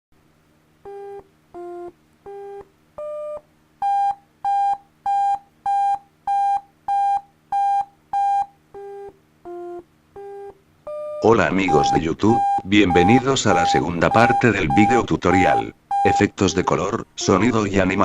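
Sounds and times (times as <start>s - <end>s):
computer beep tones: 0.9s - 17.7s.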